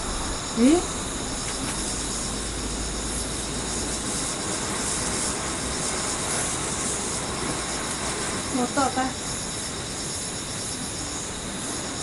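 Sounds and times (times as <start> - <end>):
ground firework hissing: 0.0 - 12.0
insects chirping: 0.0 - 12.0.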